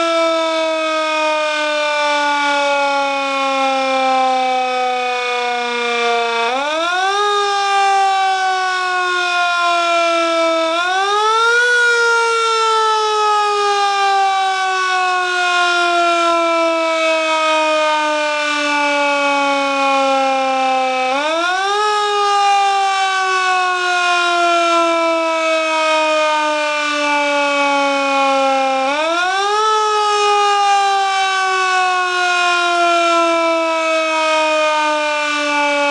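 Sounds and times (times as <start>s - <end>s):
mechanical siren wailing: 0.0s - 35.9s.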